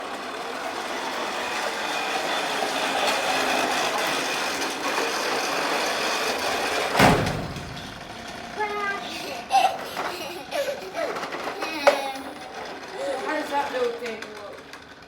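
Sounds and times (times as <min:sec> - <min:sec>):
lawn mower running: 0:00.0 - 0:15.0
loud thump: 0:06.9 - 0:07.9.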